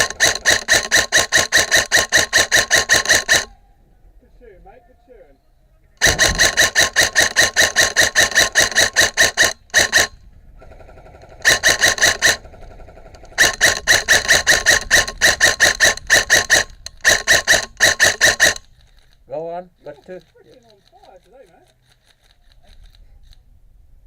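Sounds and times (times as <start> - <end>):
airsoft gun firing full auto: 0.0 - 3.5, 6.0 - 18.8.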